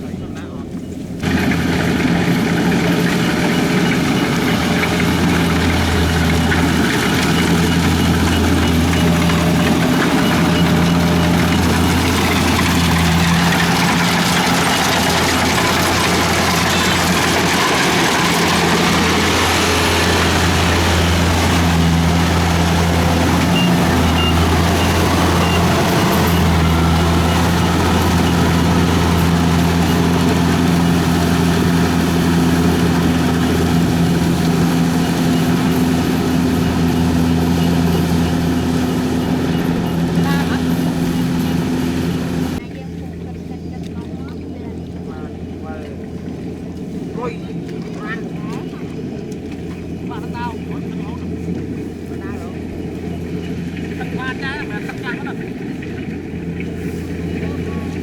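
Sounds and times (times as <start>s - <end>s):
combine harvester engine running: 0.0s - 58.0s.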